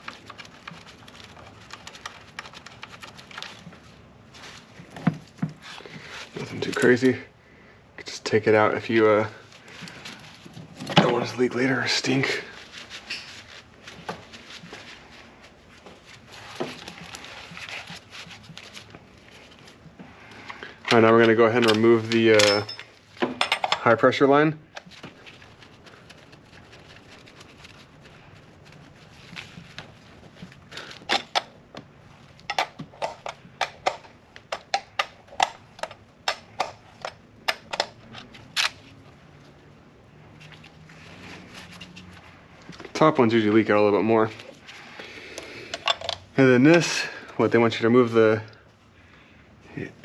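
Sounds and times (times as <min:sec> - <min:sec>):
hand tools clicking and tapping: 0:32.5 - 0:38.3.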